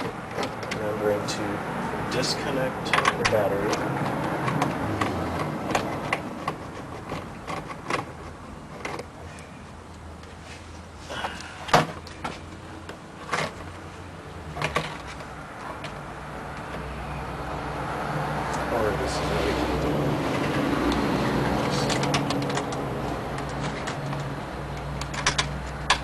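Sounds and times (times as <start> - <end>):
clicks and knocks on car parts: 0.0 - 0.9, 2.5 - 9.5, 11.2 - 13.8, 14.4 - 16.9, 20.2 - 26.0.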